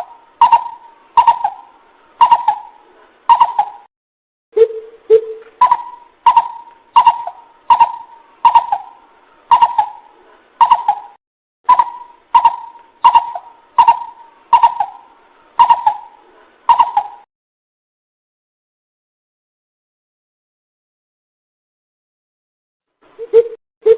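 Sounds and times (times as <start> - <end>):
bird deep hooting calls: 0.0 - 3.9, 4.6 - 17.2.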